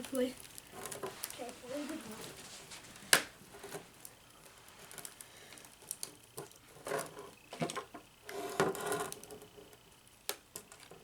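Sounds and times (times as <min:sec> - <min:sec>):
glass peeling clicks and crackles: 0:00.0 - 0:01.4, 0:04.8 - 0:07.9.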